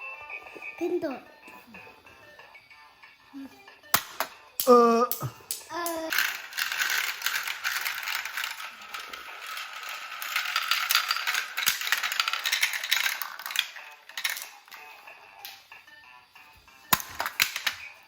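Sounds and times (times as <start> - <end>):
plastic balls rattling down marble run: 5.5 - 15.0, 16.9 - 18.0.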